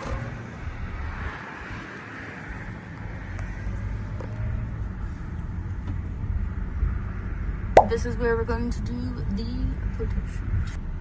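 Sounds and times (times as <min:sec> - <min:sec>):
car engine rumbling: 0:02.7 - 0:11.0.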